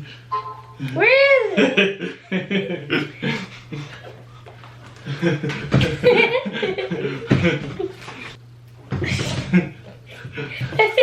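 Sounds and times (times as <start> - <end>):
kids laughing: 1.0 - 4.2, 4.9 - 8.4, 9.1 - 11.0.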